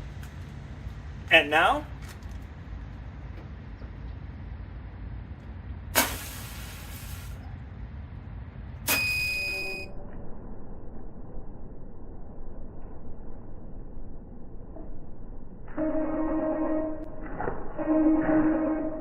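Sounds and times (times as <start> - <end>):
rocket igniter pop and hiss: 5.9 - 7.4, 8.9 - 9.1
high electronic beep: 8.9 - 10.0.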